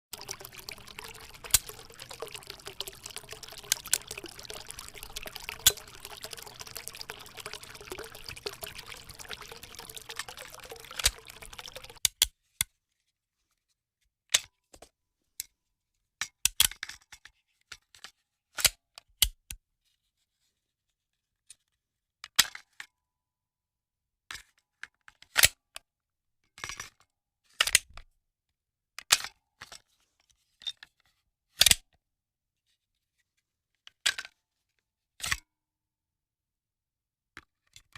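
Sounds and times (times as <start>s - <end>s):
water pouring and trickling: 0.1s - 12.0s.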